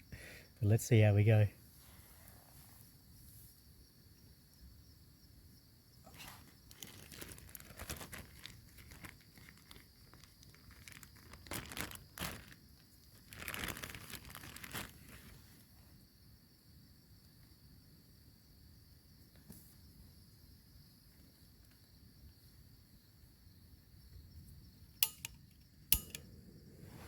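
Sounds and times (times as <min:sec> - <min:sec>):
plastic packet crinkling: 0:06.7 - 0:15.3.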